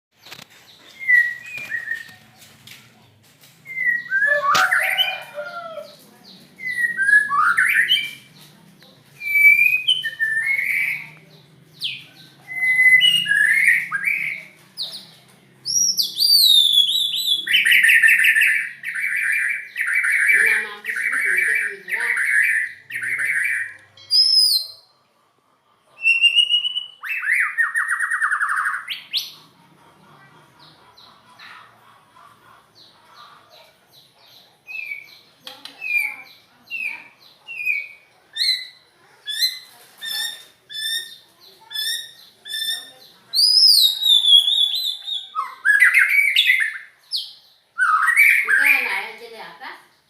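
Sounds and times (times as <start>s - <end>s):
songbird singing varied song: 3.6s - 8.5s, 9.2s - 24.9s, 34.0s - 48.9s.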